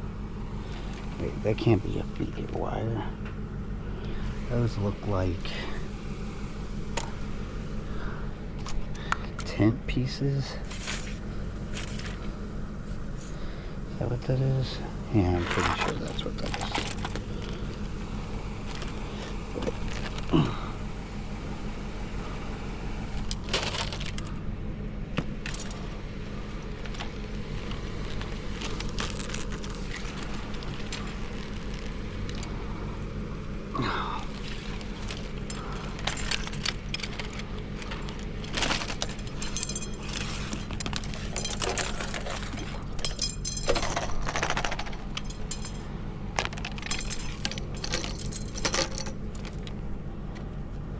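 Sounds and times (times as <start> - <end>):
steady low hum: 0.0 - 50.9
metal rods clinking and rattling: 15.4 - 20.5, 23.2 - 24.5, 25.2 - 32.6, 34.3 - 49.8.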